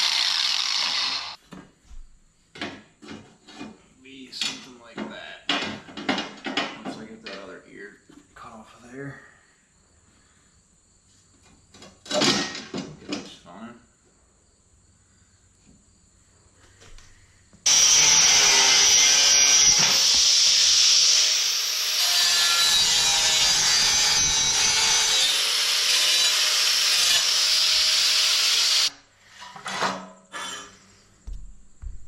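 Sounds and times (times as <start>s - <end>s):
power tool working on steel: 0.0s - 1.4s, 17.7s - 28.9s.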